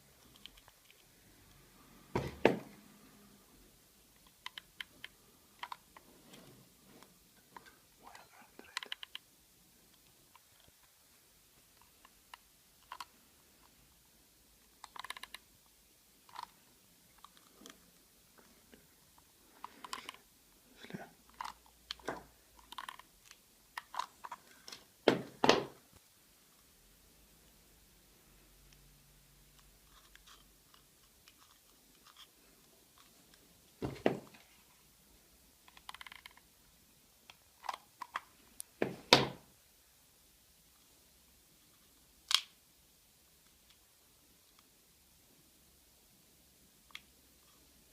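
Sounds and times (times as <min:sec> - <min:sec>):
small parts knocking and clicking: 0:14.8 - 0:15.4, 0:21.3 - 0:24.8.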